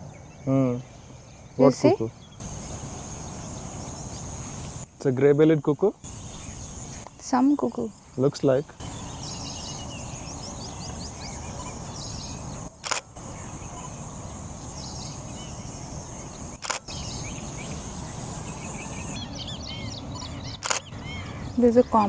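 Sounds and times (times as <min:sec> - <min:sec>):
bird chirps: 0:00.0 - 0:22.0
high-pitched insect drone: 0:02.4 - 0:04.9, 0:05.6 - 0:21.4
low background rumble: 0:05.9 - 0:22.0
sharp clicks: 0:12.8 - 0:13.2, 0:16.6 - 0:17.0, 0:20.6 - 0:21.0.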